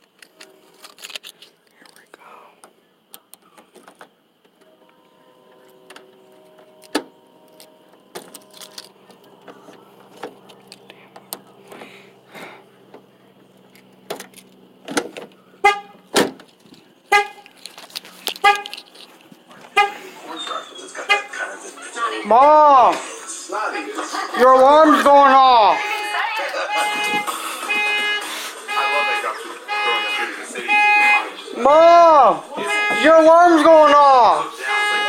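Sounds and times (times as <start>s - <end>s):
car horn honking: 4.7s - 16.4s, 17.1s - 19.0s, 19.6s - 21.6s, 24.4s - 35.0s.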